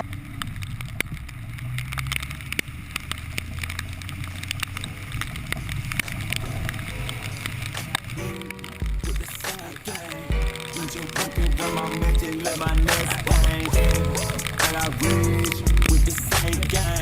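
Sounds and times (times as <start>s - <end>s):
car engine low rumble: 0.0s - 9.3s, 12.7s - 17.0s
raindrops ticking on car: 0.0s - 17.0s.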